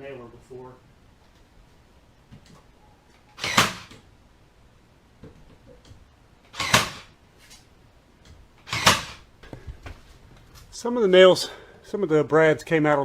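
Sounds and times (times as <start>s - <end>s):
nail gun firing into wood: 3.4s - 4.0s, 6.5s - 7.1s, 8.6s - 9.3s.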